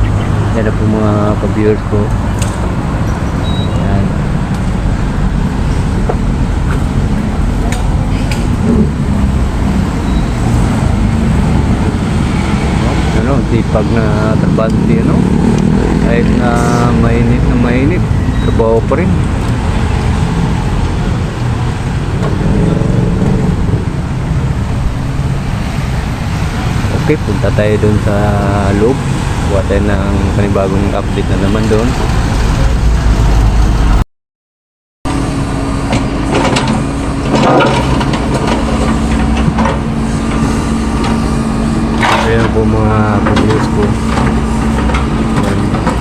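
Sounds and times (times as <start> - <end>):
engine note rising: 0.0 - 34.0
road traffic rumble: 0.0 - 34.0, 35.1 - 46.0
knocks and rattles: 35.9 - 41.2, 41.9 - 46.0.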